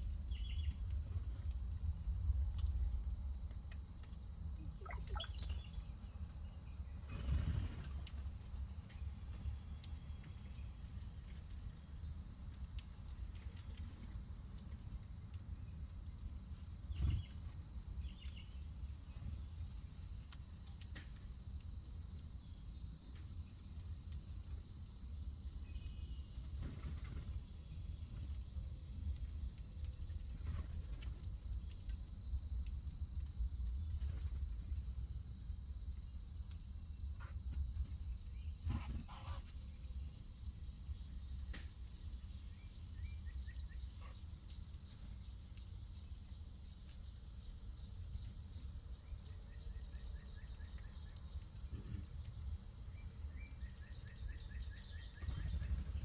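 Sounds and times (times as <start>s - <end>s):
short bird chirps: 4.7s - 5.9s
sharp falling bird call: 4.9s - 5.7s.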